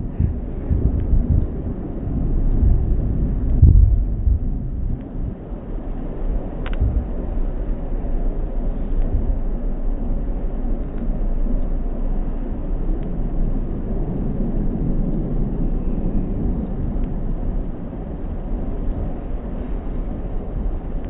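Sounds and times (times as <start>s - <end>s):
electric train rumbling: 0.0s - 21.0s
faint clicks: 6.6s - 7.8s, 10.8s - 11.8s.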